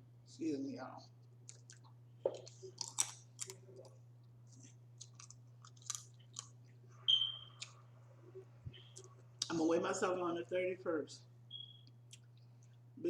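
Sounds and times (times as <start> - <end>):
chewing with wet clicks: 1.2 - 4.3, 5.0 - 7.8, 11.5 - 12.8
short whistling sound: 7.1 - 7.6.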